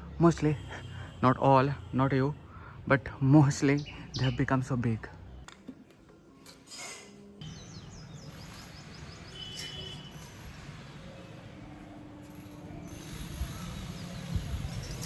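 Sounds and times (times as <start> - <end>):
birds chirping: 3.4 - 5.5, 7.4 - 11.8.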